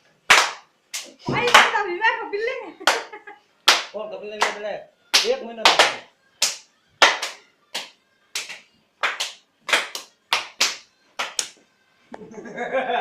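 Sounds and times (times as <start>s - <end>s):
hand claps: 0.3s - 1.8s, 2.8s - 11.6s.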